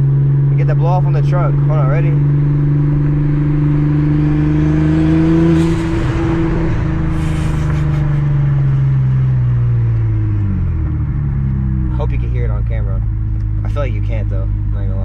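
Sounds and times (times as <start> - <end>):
car engine accelerating: 0.0 - 15.0
blow-off valve hiss: 7.1 - 8.2.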